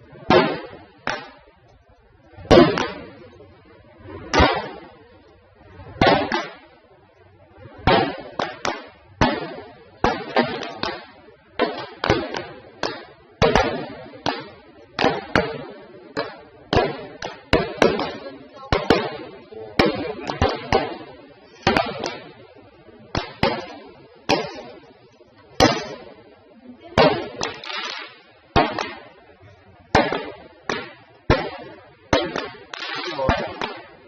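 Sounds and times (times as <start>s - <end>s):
fireworks bursting: 0.0s - 34.0s.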